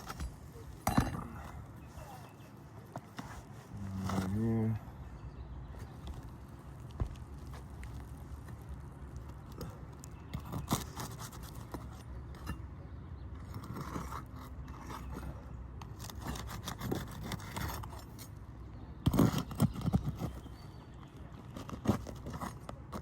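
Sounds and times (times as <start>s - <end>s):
shingles being pried loose: 19.0s - 20.6s.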